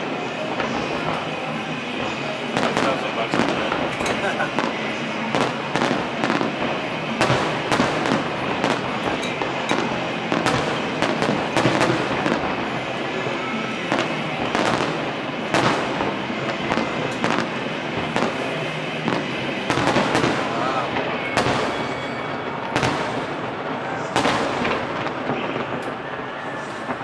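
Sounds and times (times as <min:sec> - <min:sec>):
firework crackling: 0:00.0 - 0:27.0
firework shell bursts: 0:02.0 - 0:12.6.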